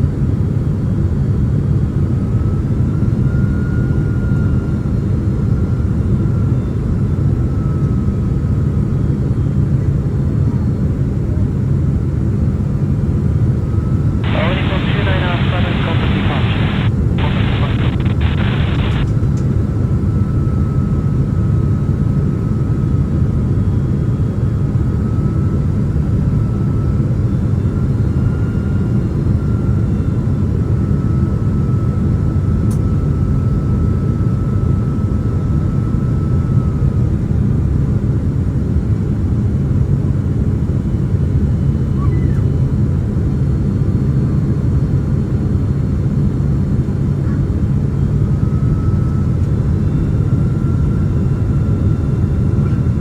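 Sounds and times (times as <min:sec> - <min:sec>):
faint high whine: 0:14.2 - 0:19.3
airliner cabin rumble: 0:14.2 - 0:19.4.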